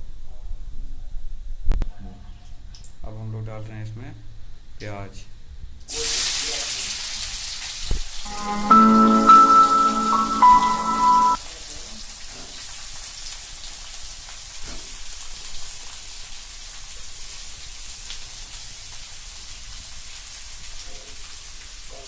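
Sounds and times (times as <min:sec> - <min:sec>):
oil sizzling in a pan: 0:05.9 - 0:08.0, 0:12.0 - 0:22.0.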